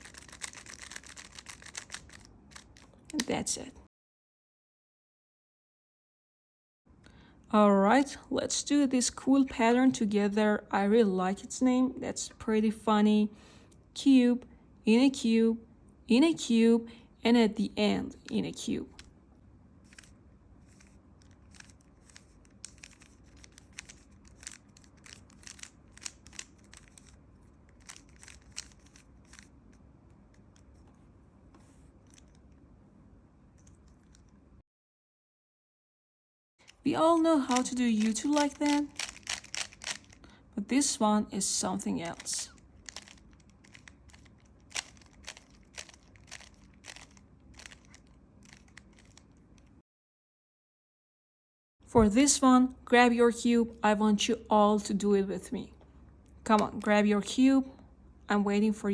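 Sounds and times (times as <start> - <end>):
puzzle cube plastic clicks: 0.0 - 3.4, 19.9 - 29.6, 36.6 - 40.3, 42.0 - 49.7.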